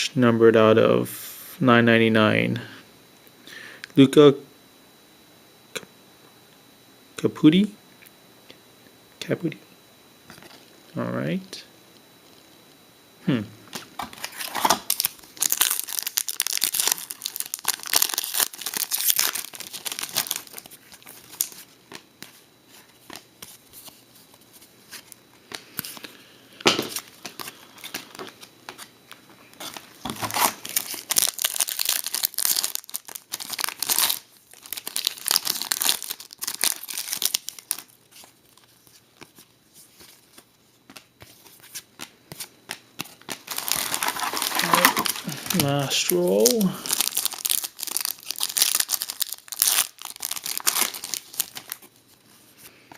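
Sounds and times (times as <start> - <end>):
card pack wrappers tearing: 14.0 - 21.6, 29.6 - 38.7, 43.2 - 52.0.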